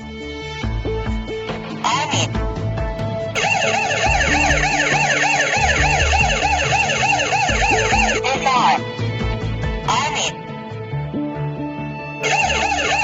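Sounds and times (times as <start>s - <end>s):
burglar alarm siren warbling: 3.4s - 8.8s, 9.9s - 10.3s, 12.2s - 13.0s.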